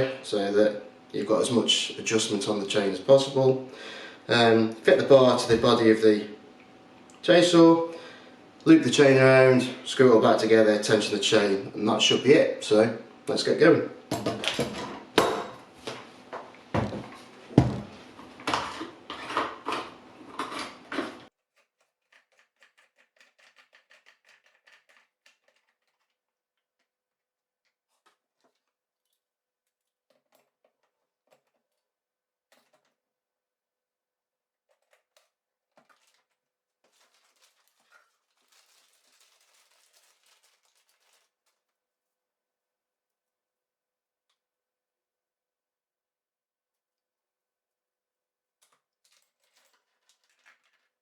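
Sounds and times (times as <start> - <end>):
rustling and scraping: 34.7 - 42.2.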